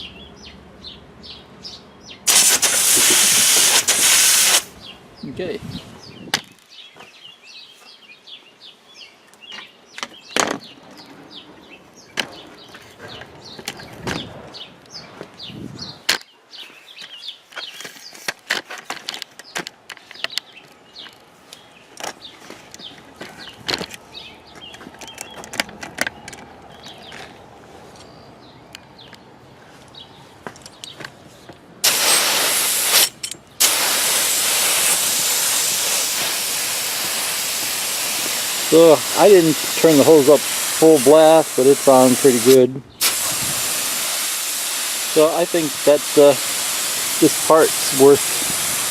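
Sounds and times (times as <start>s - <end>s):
garden hose spraying water: 2.2s - 4.8s, 31.8s - 48.9s
small clicks and knocks: 17.0s - 27.4s.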